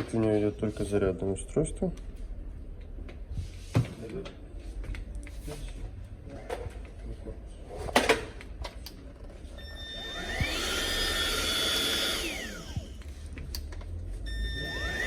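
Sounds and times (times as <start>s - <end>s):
cordless vacuum motor whining: 9.6s - 13.1s, 14.3s - 15.0s.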